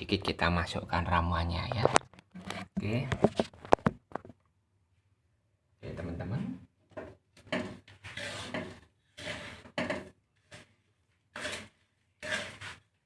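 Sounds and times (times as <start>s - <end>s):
seeds scraped in a pan: 7.6s - 9.8s, 10.4s - 13.0s.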